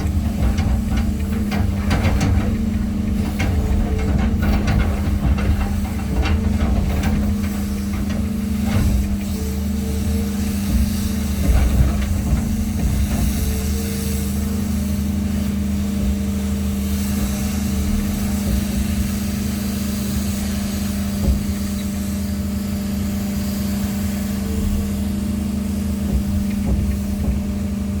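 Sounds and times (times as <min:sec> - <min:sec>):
engine running steadily: 0:00.0 - 0:28.0
short knocks: 0:26.0 - 0:28.0.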